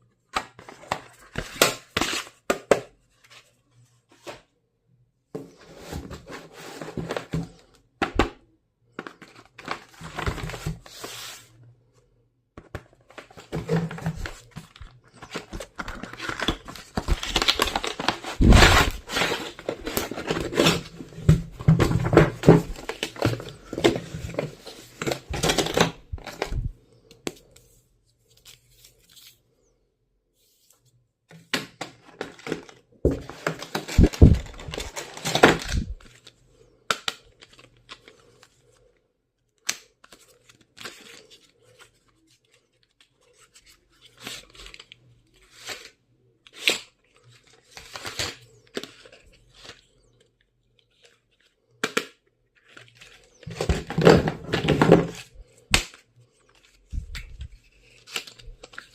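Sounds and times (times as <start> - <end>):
packaging tearing and crinkling: 15.3 - 20.9.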